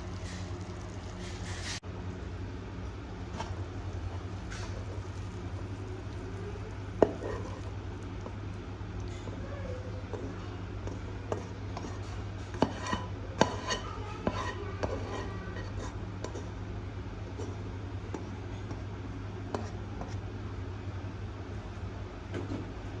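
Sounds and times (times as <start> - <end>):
steady low hum: 0.0 - 13.6.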